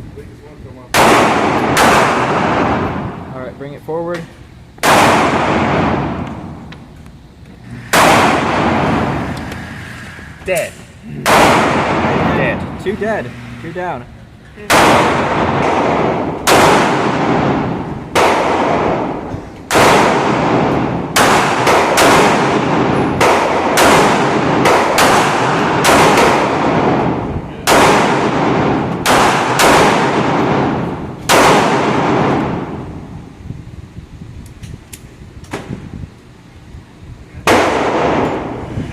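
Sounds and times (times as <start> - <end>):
gunshots with echo: 0.9 - 3.3, 4.8 - 6.7, 7.8 - 9.6, 11.2 - 13.2, 14.7 - 33.2, 37.4 - 38.7.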